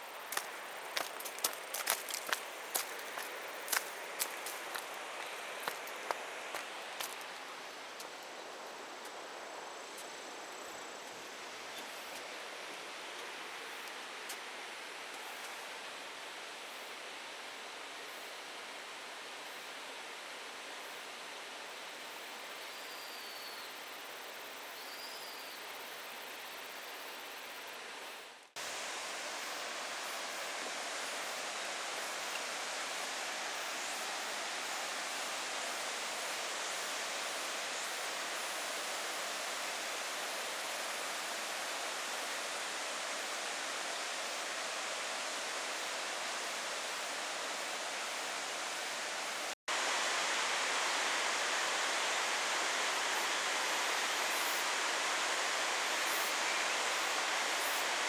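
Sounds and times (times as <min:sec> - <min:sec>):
waterfall rushing water: 0:28.6 - 0:58.0.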